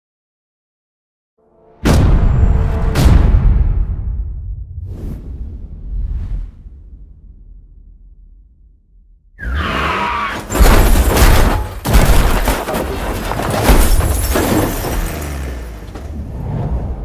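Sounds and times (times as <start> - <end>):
deep low rumble: 2.1 - 9.4
heavy crashing hits: 10.4 - 16.3.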